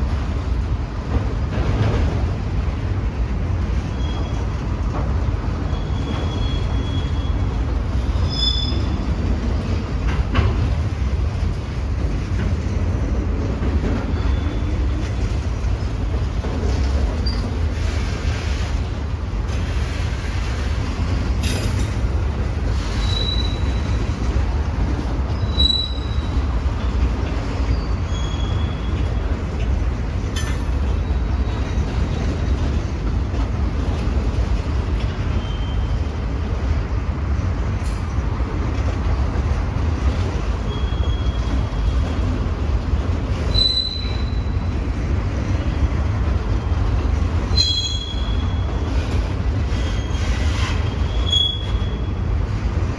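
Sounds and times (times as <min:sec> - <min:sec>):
freight train rumbling past: 0:00.0 - 0:52.9
steel wheels squealing: 0:03.8 - 0:04.6, 0:05.6 - 0:09.3, 0:14.0 - 0:15.4, 0:17.1 - 0:18.4, 0:22.7 - 0:24.3, 0:25.3 - 0:26.9, 0:27.5 - 0:29.4, 0:30.4 - 0:32.7, 0:35.1 - 0:36.1, 0:40.6 - 0:42.2, 0:43.3 - 0:44.8, 0:47.4 - 0:52.3.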